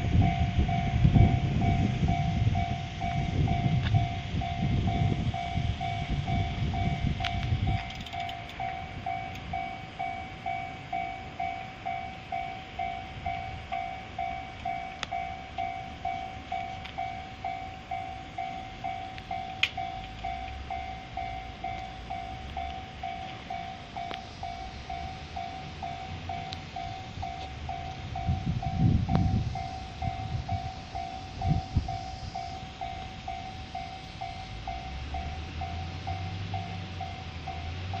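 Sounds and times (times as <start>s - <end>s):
level-crossing alarm dinging: 0.0s - 38.0s
train rumbling past: 0.0s - 38.0s.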